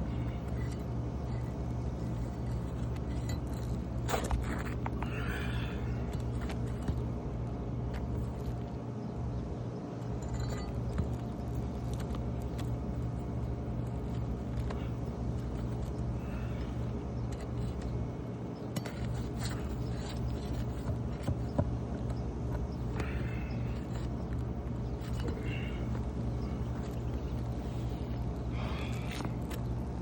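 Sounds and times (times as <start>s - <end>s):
steady low hum: 0.0s - 30.0s
hand tools clinking on shingles: 0.1s - 7.1s, 18.6s - 29.9s.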